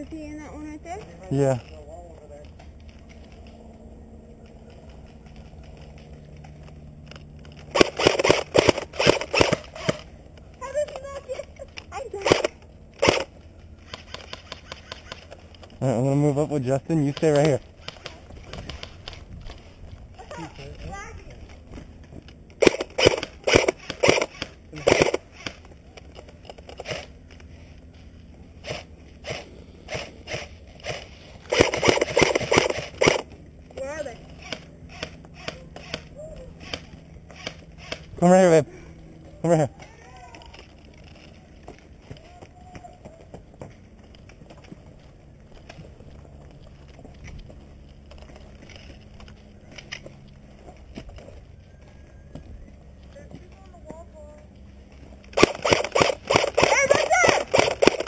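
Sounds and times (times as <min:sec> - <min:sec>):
footsteps crunching over ground: 0:00.0 - 0:07.8, 0:08.7 - 0:35.8, 0:36.6 - 0:56.2
low background noise: 0:00.0 - 0:58.0
airsoft gun shots: 0:07.7 - 0:10.0, 0:12.2 - 0:13.3, 0:22.6 - 0:25.6, 0:28.6 - 0:33.2, 0:55.4 - 0:58.0.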